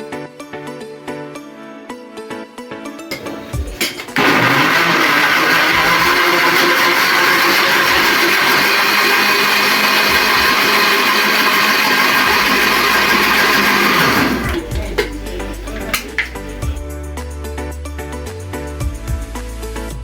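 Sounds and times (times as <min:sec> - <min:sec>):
electric blender running: 0:03.1 - 0:16.7.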